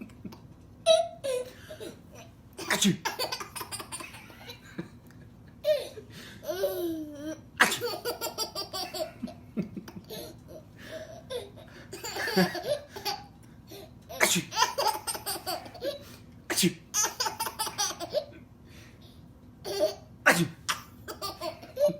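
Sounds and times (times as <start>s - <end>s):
baby laughing: 0.3s - 4.7s, 5.6s - 16.2s, 16.9s - 18.4s, 19.7s - 20.1s, 20.7s - 21.9s
man sneezing: 2.6s - 3.1s, 7.6s - 7.8s, 14.2s - 14.6s, 16.5s - 16.9s, 20.3s - 20.7s.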